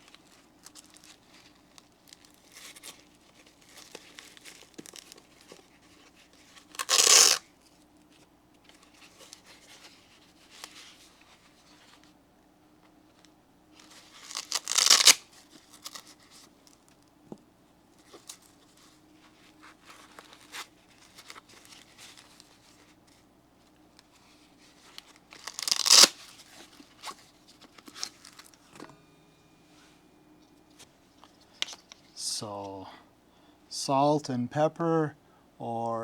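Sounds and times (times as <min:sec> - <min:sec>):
small clicks and rustles: 0:00.0 - 0:06.9, 0:07.6 - 0:12.2, 0:17.9 - 0:28.8
packaging tearing: 0:06.6 - 0:07.4, 0:13.9 - 0:16.3, 0:24.9 - 0:28.6.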